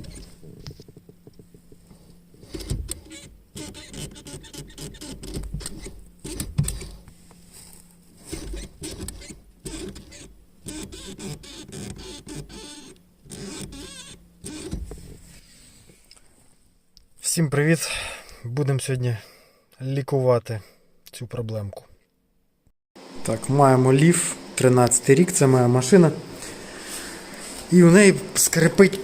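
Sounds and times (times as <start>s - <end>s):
brake pedal squeaking: 2.4s - 7.0s, 8.2s - 15.3s.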